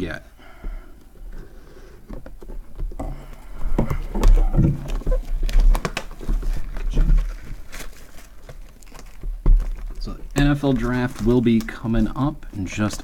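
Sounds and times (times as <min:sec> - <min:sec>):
dull thumps: 0:02.0 - 0:07.6, 0:08.5 - 0:10.7.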